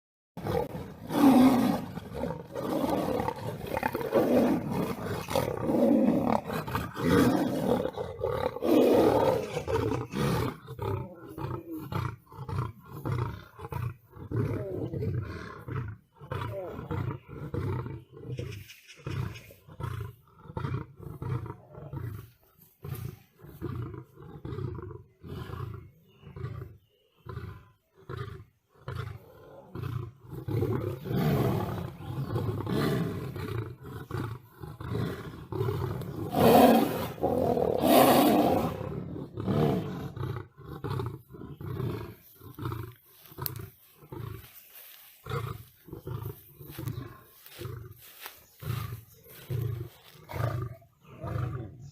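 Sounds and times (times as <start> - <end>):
big cat roaring: 0.4 - 44.5.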